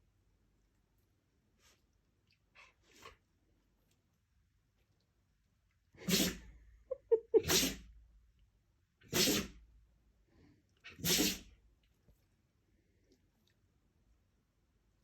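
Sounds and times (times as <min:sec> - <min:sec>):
dog sneezing: 0:06.0 - 0:06.6, 0:07.3 - 0:07.9, 0:09.0 - 0:09.6, 0:10.8 - 0:11.6.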